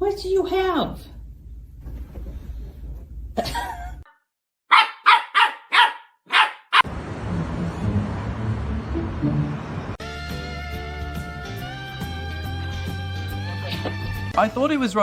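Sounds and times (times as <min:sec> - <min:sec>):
dog barking: 0:04.7 - 0:06.9.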